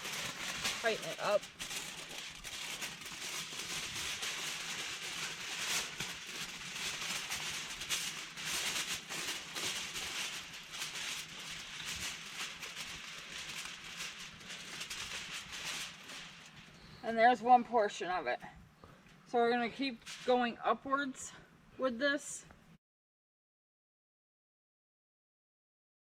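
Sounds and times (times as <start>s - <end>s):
aluminium foil crinkling: 0.0s - 17.6s, 19.1s - 20.6s.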